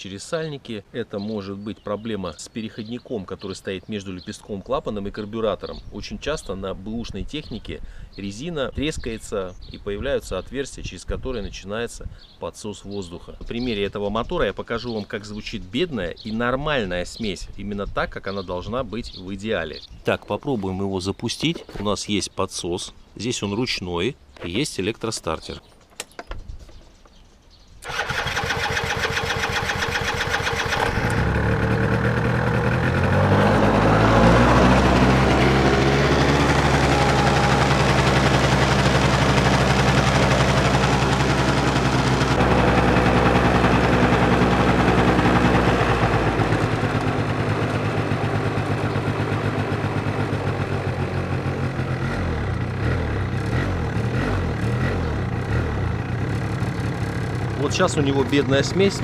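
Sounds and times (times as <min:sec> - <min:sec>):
electric starter cranking engine: 0:27.8 - 0:50.7
scooter engine revving: 0:27.8 - 0:59.0.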